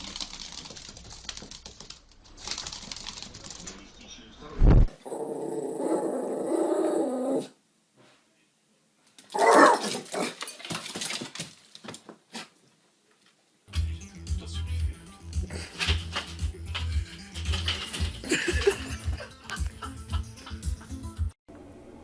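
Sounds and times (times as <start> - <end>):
dog growling: 5.0 - 7.6
clicks and scuffling: 9.1 - 12.5, 15.6 - 18.8.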